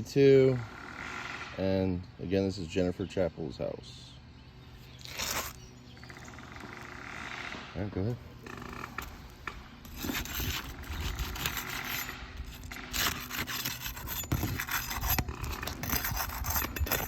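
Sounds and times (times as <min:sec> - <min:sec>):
tool scraping under roof shingles: 0:05.0 - 0:05.6, 0:08.3 - 0:17.0.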